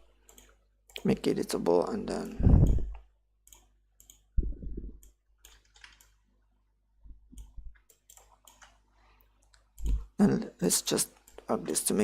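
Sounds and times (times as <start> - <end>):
computer mouse clicks: 0.2 - 1.2, 2.2 - 4.4, 5.0 - 6.2, 7.3 - 8.8, 9.4 - 10.1, 11.1 - 11.5.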